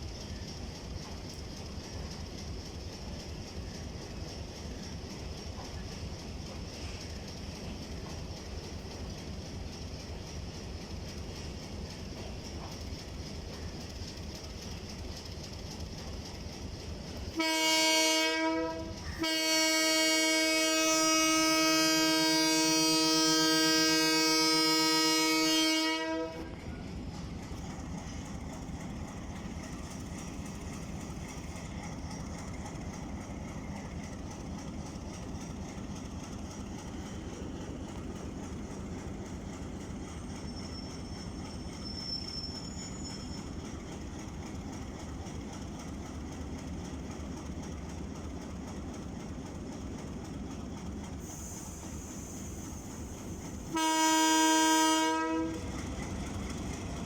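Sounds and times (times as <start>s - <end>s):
train rumble and wheel clatter: 0.0s - 57.0s
locomotive horn blast: 17.4s - 26.5s, 53.7s - 55.7s.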